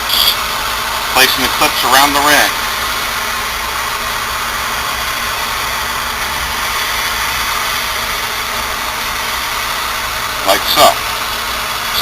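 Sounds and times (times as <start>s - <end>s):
steady background noise: 0.0s - 12.0s
low hum: 2.5s - 10.4s.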